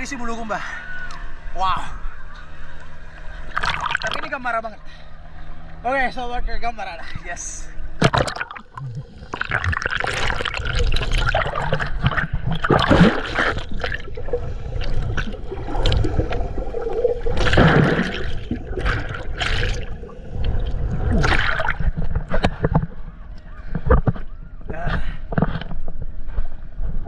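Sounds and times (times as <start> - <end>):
water splashing from swimming: 3.4 - 4.4, 8.0 - 23.1.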